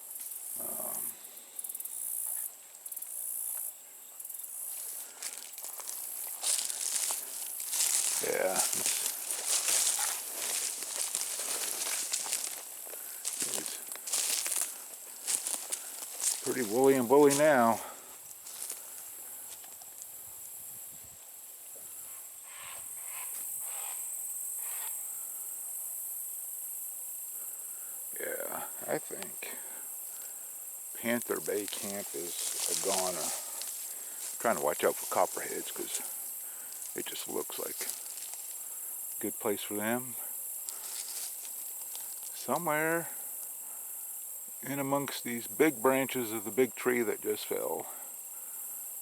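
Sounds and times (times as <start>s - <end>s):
insects trilling: 0.0s - 49.0s
faint rustles: 4.6s - 20.2s, 31.0s - 39.2s, 40.6s - 42.4s.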